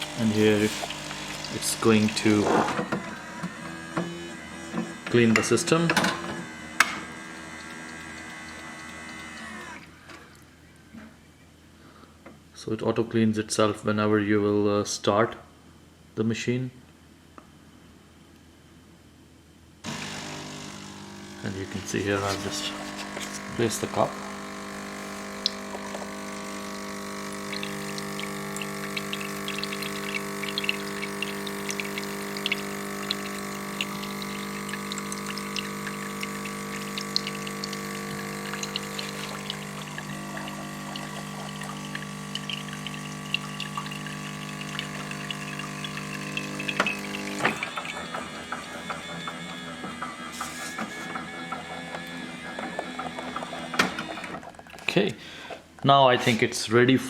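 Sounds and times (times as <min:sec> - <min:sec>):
hot water spitting and crackling: 0:00.0 - 0:02.9, 0:19.9 - 0:48.0
coffee machine pump humming: 0:00.0 - 0:11.2, 0:19.8 - 0:56.5.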